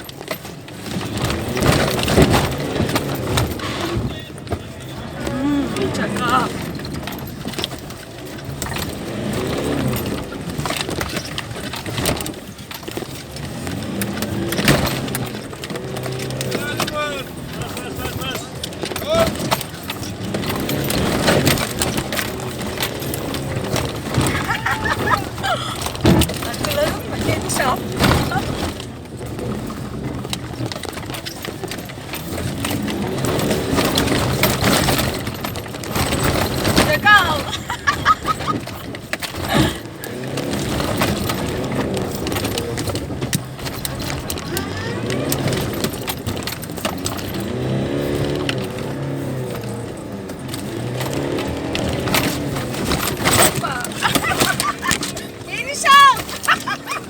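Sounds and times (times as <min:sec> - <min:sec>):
knocks and rattles: 0:00.0 - 0:57.0
pickup engine revving: 0:00.8 - 0:57.0.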